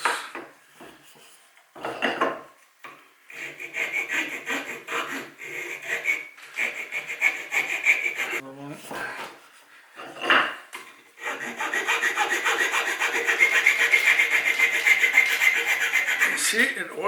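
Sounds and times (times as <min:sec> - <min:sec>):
file rasping on wood: 0:03.3 - 0:08.4, 0:11.2 - 0:16.7.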